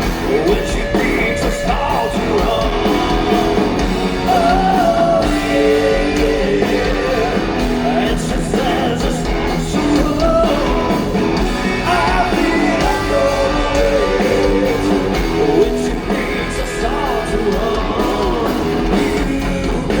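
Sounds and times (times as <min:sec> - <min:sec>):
rock band playing live: 0:00.0 - 0:20.0
person singing: 0:00.2 - 0:20.0.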